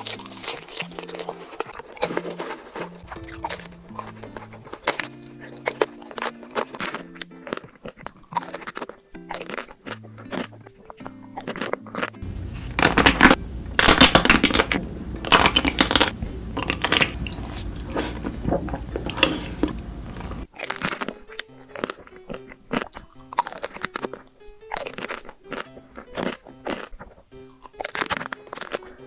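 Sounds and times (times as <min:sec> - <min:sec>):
background music: 0:00.0 - 0:12.1
chocolate crunching and chewing: 0:00.0 - 0:29.0
low hum: 0:12.2 - 0:20.4.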